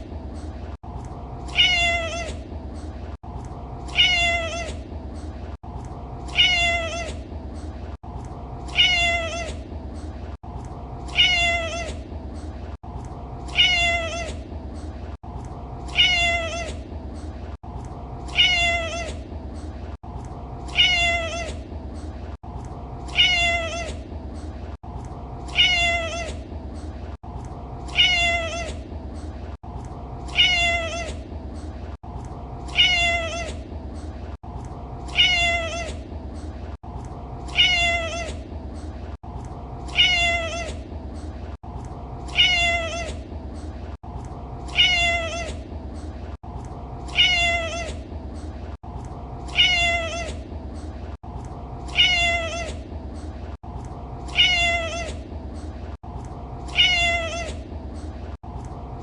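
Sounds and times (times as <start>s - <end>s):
low background hum: 0.0s - 59.0s
cat meowing: 1.5s - 2.4s, 3.9s - 4.8s, 6.3s - 7.2s, 8.7s - 9.6s, 11.1s - 12.0s, 13.5s - 14.4s, 15.9s - 16.8s, 18.3s - 19.2s, 20.7s - 21.6s, 23.1s - 24.0s, 25.5s - 26.4s, 27.9s - 28.8s, 30.3s - 31.2s, 32.7s - 33.6s, 35.1s - 36.0s, 37.5s - 38.4s, 39.9s - 40.8s, 42.3s - 43.2s, 44.7s - 45.6s, 47.1s - 48.0s, 49.5s - 50.4s, 51.9s - 52.8s, 54.3s - 55.2s, 56.7s - 57.6s.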